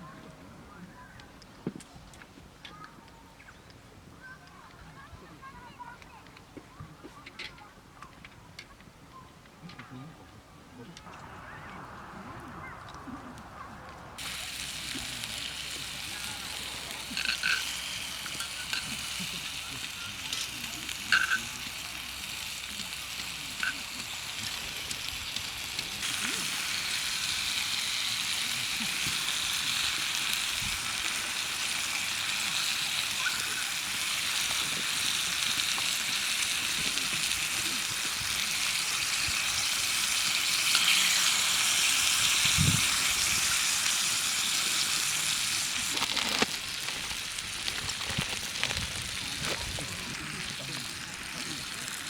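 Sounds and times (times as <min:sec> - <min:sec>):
food sizzling in a frying pan: 0:14.2 - 0:52.0.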